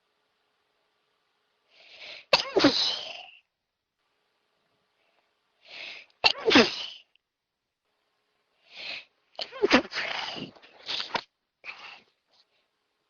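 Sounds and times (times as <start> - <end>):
person sneezing: 2.2 - 3.4, 6.2 - 7.1, 8.8 - 12.0.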